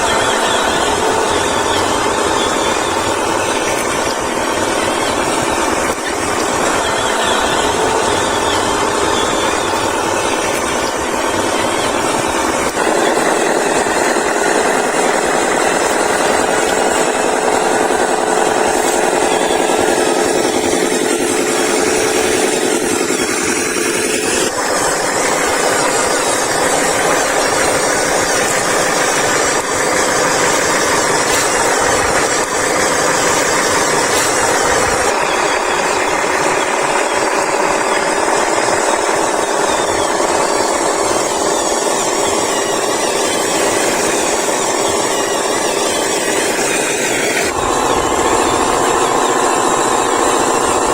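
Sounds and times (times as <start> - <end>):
steady whine: 0.0 - 50.9
toy electric motors whirring: 0.0 - 50.9.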